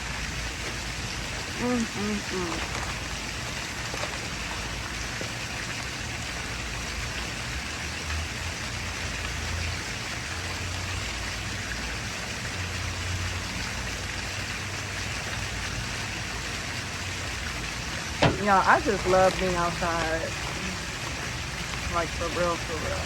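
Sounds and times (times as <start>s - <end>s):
splashing running water: 0.0s - 23.0s.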